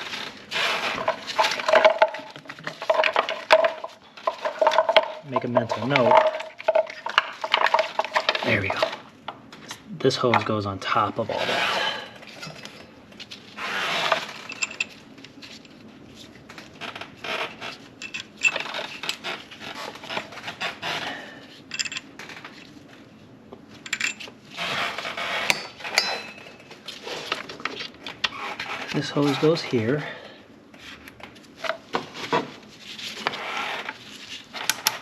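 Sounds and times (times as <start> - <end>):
rubbing and scraping: 0.0 - 9.1, 11.2 - 12.5, 30.8 - 35.0
clinks and clicks of parts: 14.1 - 15.8, 18.0 - 19.2, 21.7 - 22.6, 23.8 - 24.3, 25.4 - 26.7.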